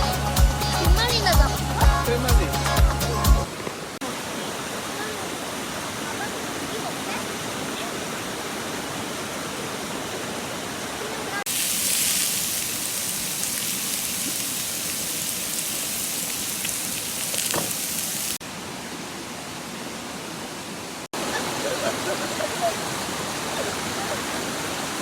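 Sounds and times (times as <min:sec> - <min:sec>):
stream rushing over rocks: 0:02.2 - 0:25.0.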